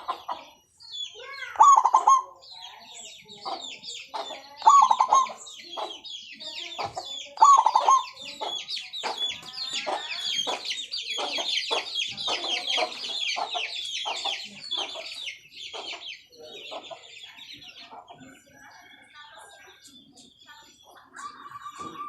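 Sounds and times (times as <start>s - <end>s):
doves cooing: 0.0s - 0.5s, 1.5s - 2.4s, 3.6s - 6.0s, 6.7s - 16.1s
high chirping of small birds: 0.0s - 22.0s.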